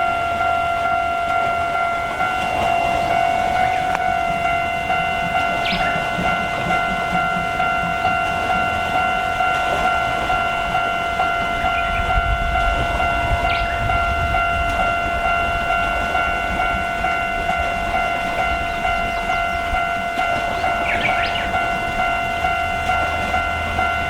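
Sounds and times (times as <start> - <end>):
level crossing warning bell: 0.0 - 24.0.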